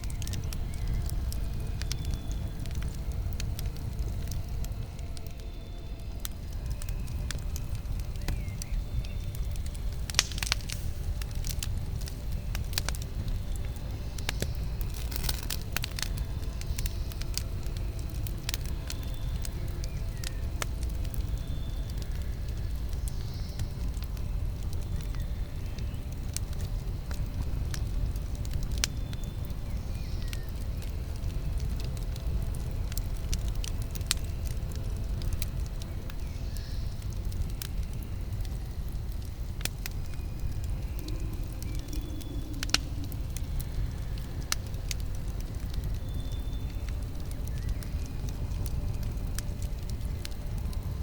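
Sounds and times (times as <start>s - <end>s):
campfire crackling and popping: 0.0s - 51.0s.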